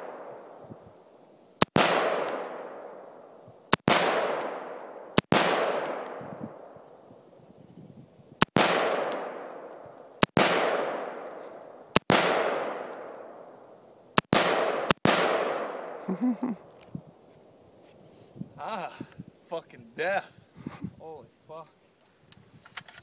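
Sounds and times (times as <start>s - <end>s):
rifle shots with echo: 0.0s - 0.6s, 1.6s - 6.9s, 8.4s - 16.1s.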